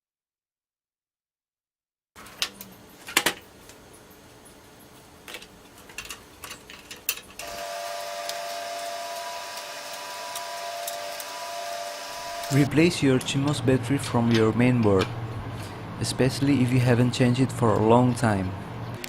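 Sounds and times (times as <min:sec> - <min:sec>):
small electric motor whining: 0:07.4 - 0:12.7.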